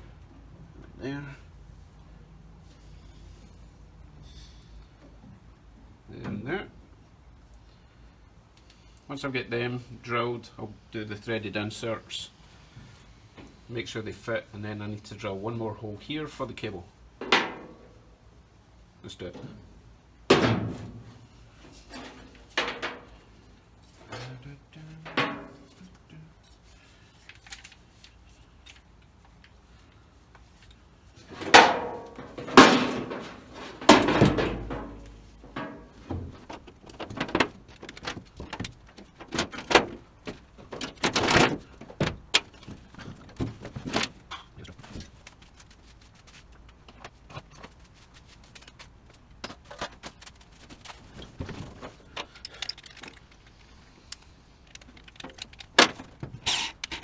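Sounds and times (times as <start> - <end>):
metal tools knocking and clattering: 20.3 - 23.3, 25.1 - 25.8, 31.2 - 45.3, 49.4 - 57.0
faint bumps: 29.7 - 57.0.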